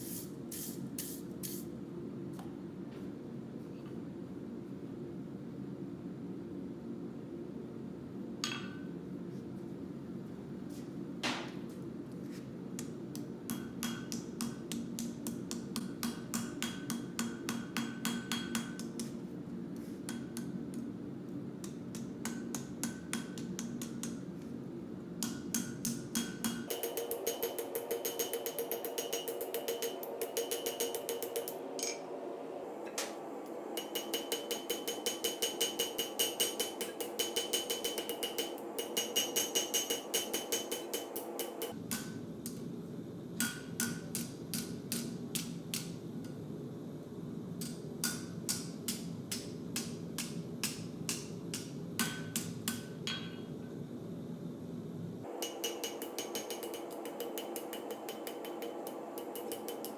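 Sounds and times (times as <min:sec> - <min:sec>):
low steady hum: 0:00.0 - 0:59.9
hammer striking steel on anvil: 0:08.4 - 0:08.8, 0:13.5 - 0:19.2, 0:21.6 - 0:24.2, 0:25.2 - 0:32.0, 0:33.7 - 0:42.6, 0:43.4 - 0:46.4, 0:47.6 - 0:53.5, 0:55.3 - 0:59.9.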